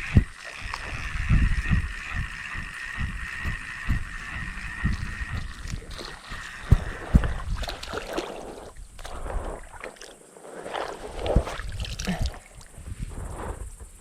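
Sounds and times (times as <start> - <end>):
knocks and sharp thumps: 0.0 - 8.0
creek water sloshing and splashing: 0.0 - 12.8.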